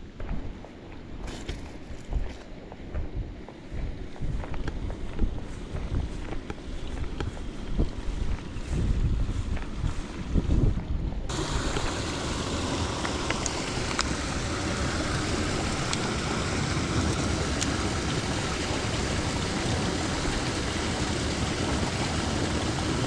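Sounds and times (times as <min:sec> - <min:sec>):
water flowing through a channel: 0:11.3 - 0:23.0.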